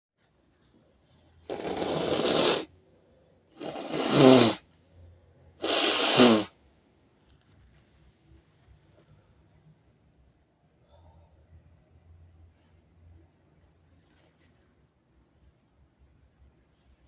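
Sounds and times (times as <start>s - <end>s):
person blowing nose: 1.4s - 2.7s, 3.6s - 4.7s, 5.6s - 6.6s.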